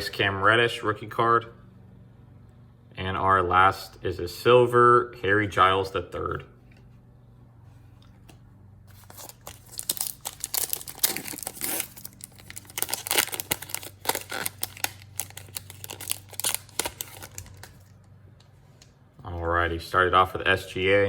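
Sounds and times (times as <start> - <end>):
plastic wrapper tearing and crinkling: 8.9 - 18.1.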